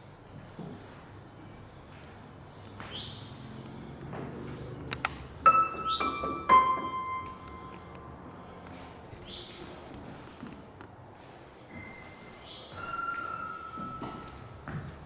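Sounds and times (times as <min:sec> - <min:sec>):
insects droning: 0:00.0 - 0:15.0
footsteps on wooden floor: 0:01.8 - 0:07.6, 0:08.6 - 0:15.0.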